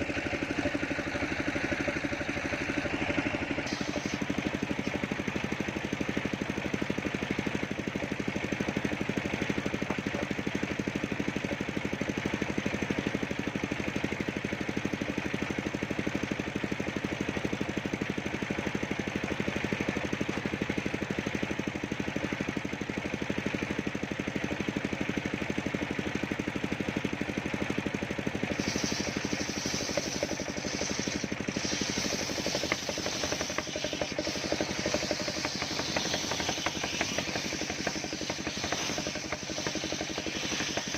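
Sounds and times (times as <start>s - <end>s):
saw rig engine running: 0.0s - 40.9s
higher hiss: 3.7s - 4.9s, 28.5s - 40.9s.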